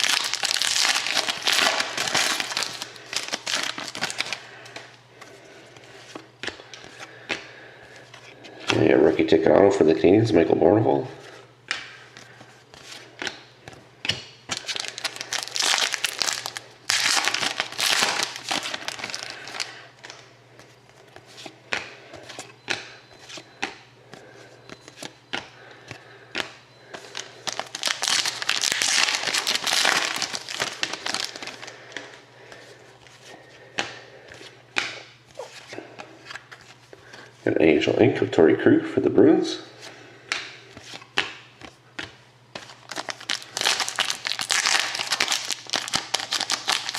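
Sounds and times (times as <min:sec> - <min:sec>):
wrappers and cards crinkling: 0:00.0 - 0:05.0, 0:14.5 - 0:21.6, 0:26.4 - 0:33.4, 0:40.8 - 0:46.9.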